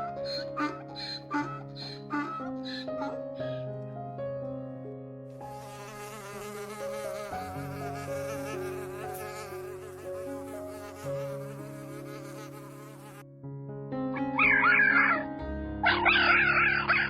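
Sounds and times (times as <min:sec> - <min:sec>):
soft piano music: 0:00.0 - 0:17.0
flying insect buzzing: 0:00.2 - 0:03.5, 0:05.4 - 0:13.2.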